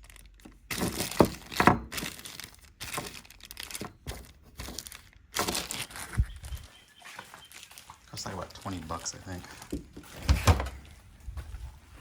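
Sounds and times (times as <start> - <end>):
rustling and crinkling: 0.0 - 12.0.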